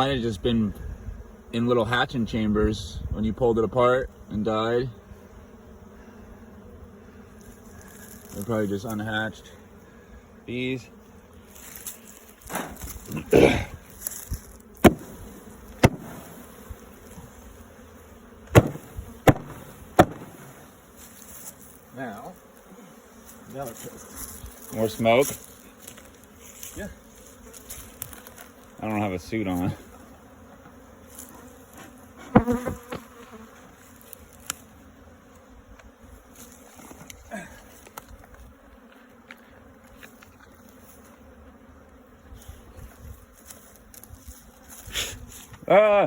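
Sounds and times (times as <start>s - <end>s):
bees buzzing: 0.0s - 2.5s, 3.4s - 46.0s
sharp knocks: 14.8s - 15.2s, 15.8s - 16.2s, 18.5s - 20.5s.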